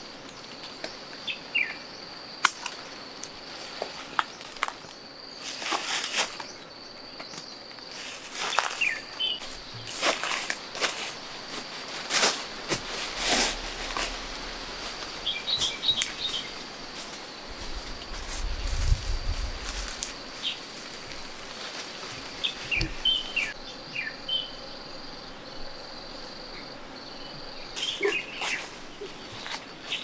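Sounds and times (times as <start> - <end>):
high insect drone: 0.0 - 30.0
rustling: 7.8 - 23.6.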